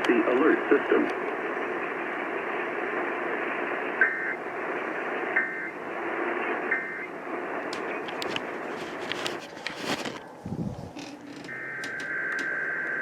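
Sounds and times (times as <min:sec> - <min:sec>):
radio broadcast hiss: 0:00.0 - 0:11.4
sharp clicks: 0:10.9 - 0:12.6.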